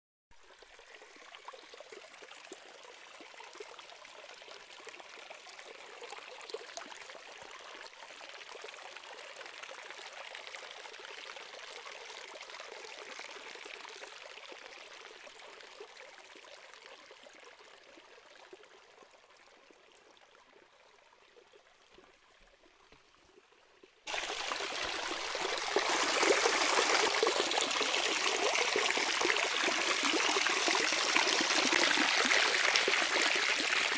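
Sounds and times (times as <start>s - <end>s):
water trickling: 18.4s - 33.9s
loud running water: 24.1s - 33.9s.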